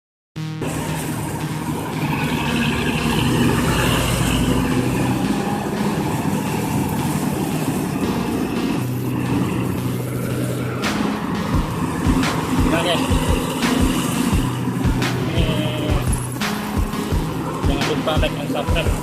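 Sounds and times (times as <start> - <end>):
bus diesel engine running: 0.5 - 19.0.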